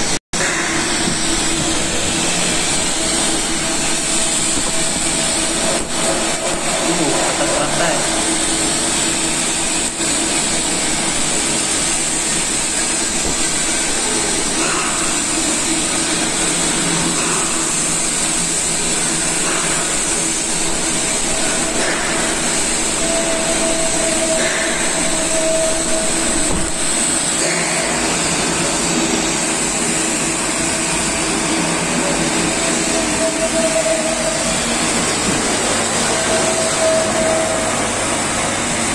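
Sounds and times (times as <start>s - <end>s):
welding hiss and hum: 0.0s - 38.9s.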